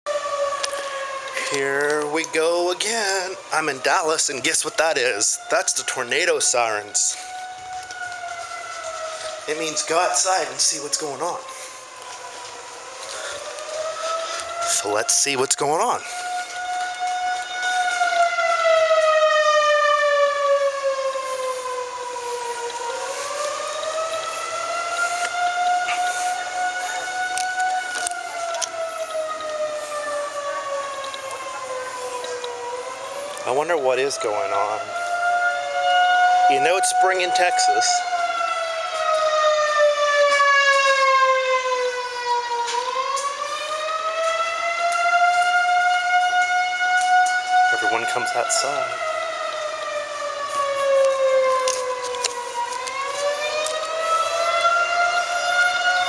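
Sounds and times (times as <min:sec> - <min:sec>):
tornado warning siren wailing: 0:00.1 - 0:56.0.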